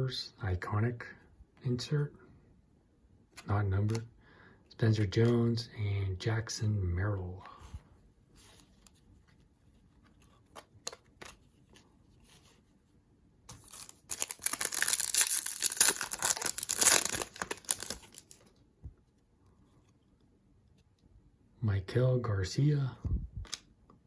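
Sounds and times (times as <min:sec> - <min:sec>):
foil wrapper tearing and crinkling: 0:13.5 - 0:18.4.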